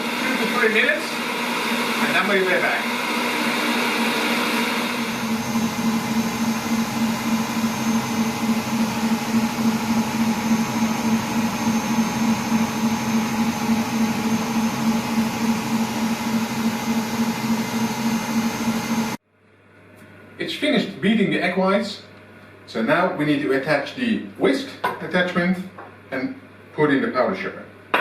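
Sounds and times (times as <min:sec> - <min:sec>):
stand mixer beating: 0:00.0 - 0:19.2.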